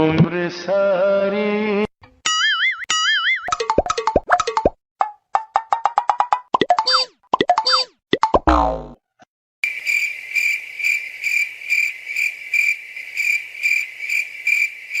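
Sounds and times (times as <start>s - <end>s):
cartoon sound effect sliding down: 6.6s - 9.0s
crickets chirping: 9.6s - 15.0s.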